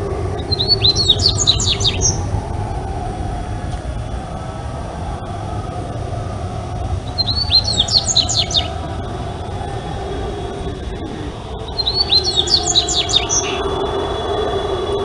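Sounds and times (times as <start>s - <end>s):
steady low rumble: 0.0s - 15.0s
bird singing whistled phrases: 0.4s - 2.3s, 7.1s - 8.8s, 11.6s - 15.0s.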